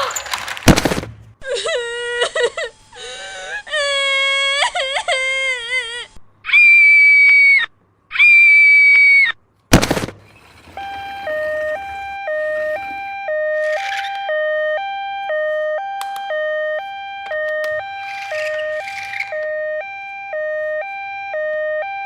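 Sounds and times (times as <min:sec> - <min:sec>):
toy two-tone siren: 0:10.4 - 0:22.0
long electronic beeps: 0:10.6 - 0:22.0.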